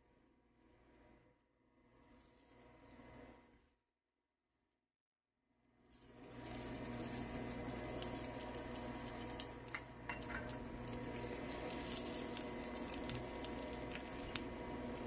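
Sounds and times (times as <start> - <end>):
faint steady hum: 6.0 - 15.0
egg sizzling in a frying pan: 6.2 - 15.0.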